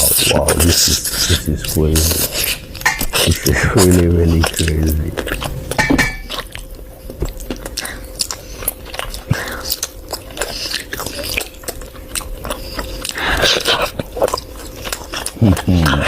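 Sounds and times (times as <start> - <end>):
faint steady hum: 0.0 - 16.0
person chewing food: 0.0 - 16.0.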